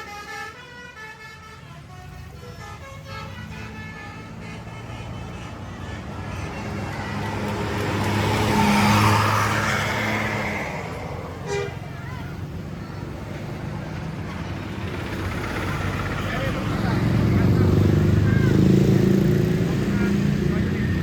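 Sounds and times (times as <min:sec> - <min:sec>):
musical horn melody: 0:00.0 - 0:07.8
bus passing by: 0:00.0 - 0:21.0.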